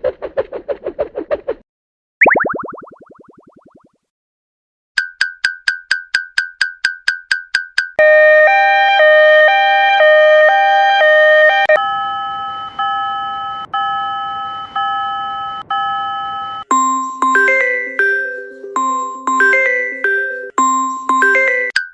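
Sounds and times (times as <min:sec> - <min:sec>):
electronic crossing warning bells: 0:10.6 - 0:21.8.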